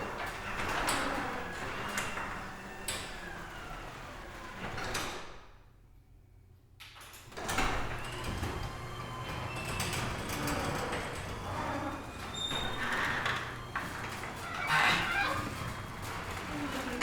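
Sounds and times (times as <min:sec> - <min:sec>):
garage door rumbling on tracks: 0:07.3 - 0:17.0
roller clicks: 0:07.4 - 0:17.0.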